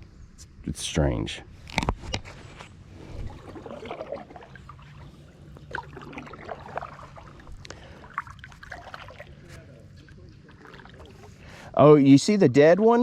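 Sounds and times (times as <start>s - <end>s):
water trickling and splashing: 2.9s - 11.8s
water drips: 3.3s - 11.5s.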